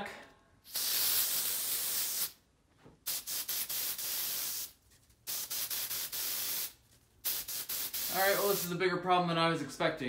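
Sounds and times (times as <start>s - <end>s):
aerosol spray hissing: 0.6s - 2.4s, 3.0s - 8.8s.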